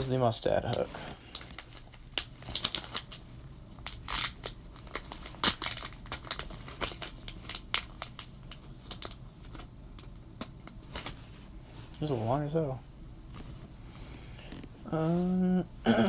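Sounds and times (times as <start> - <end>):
packaging crinkling and tearing: 0.7 - 11.2.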